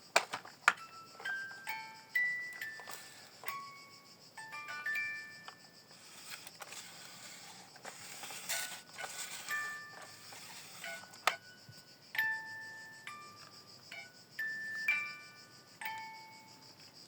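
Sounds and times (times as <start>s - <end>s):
chiming bell-like melody: 0.8s - 5.8s, 11.4s - 16.7s.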